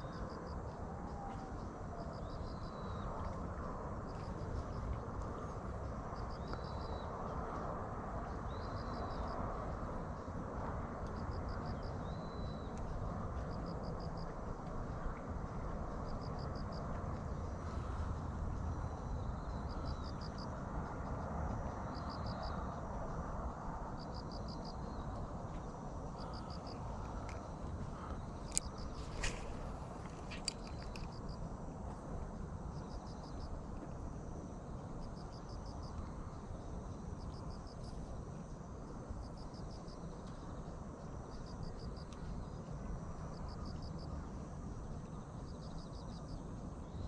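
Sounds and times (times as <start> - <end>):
cricket chirping: 0.0 - 10.3, 10.9 - 47.0
low rushing background noise: 10.0 - 47.0
steady low rumble: 16.8 - 21.9, 24.6 - 35.0.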